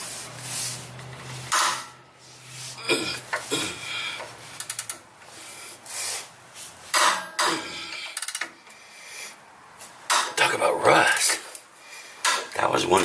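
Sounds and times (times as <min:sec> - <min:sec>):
tool scraping and knocking metal: 0:01.0 - 0:02.0
ratchet clicks: 0:04.6 - 0:05.0, 0:08.0 - 0:08.6.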